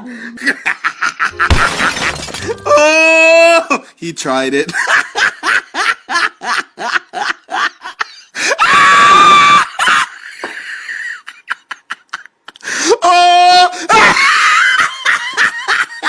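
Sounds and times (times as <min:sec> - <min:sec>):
loud scream: 0:08.6 - 0:09.8.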